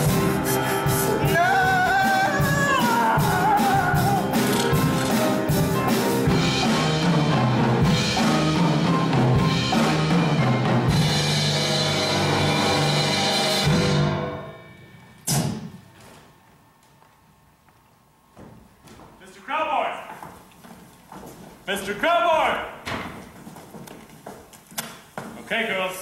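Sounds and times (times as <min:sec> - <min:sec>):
dramatic band music with drums: 0:00.0 - 0:15.7
sharp ringing hit: 0:13.8 - 0:15.9.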